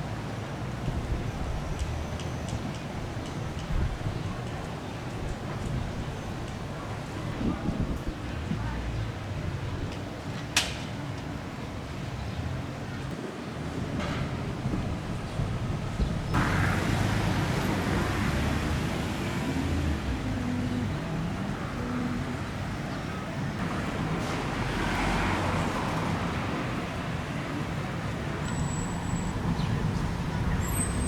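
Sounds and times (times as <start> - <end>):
street traffic: 0.0 - 31.0
vehicle passing loudly: 16.4 - 21.4, 23.6 - 28.4.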